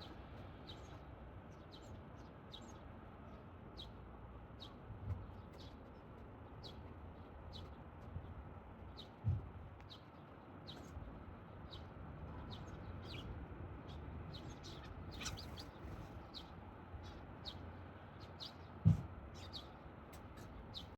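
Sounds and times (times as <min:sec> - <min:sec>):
sparrows chirping: 0:00.0 - 0:07.8, 0:09.8 - 0:20.9
dull low thump: 0:09.2 - 0:09.6, 0:18.8 - 0:19.1.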